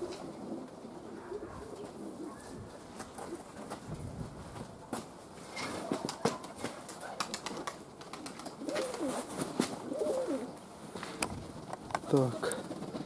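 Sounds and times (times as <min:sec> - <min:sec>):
pigeons cooing: 0:00.0 - 0:03.6, 0:05.7 - 0:11.2, 0:12.1 - 0:13.0.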